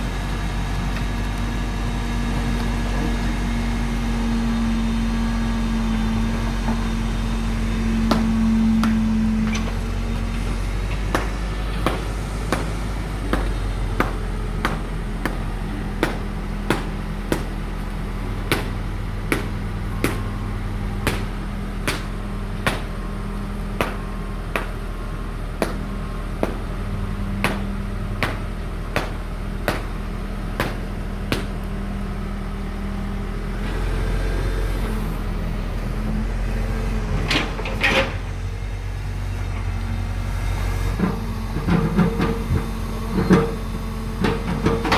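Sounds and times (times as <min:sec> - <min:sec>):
diesel engine running: 0:00.0 - 0:44.9
sharp knocks on concrete: 0:16.0 - 0:17.6, 0:18.5 - 0:20.3, 0:21.0 - 0:21.3, 0:21.9 - 0:22.1, 0:23.8 - 0:24.0, 0:24.6 - 0:24.8, 0:25.6 - 0:26.6, 0:27.4 - 0:28.4, 0:29.0 - 0:29.9, 0:30.6 - 0:31.6.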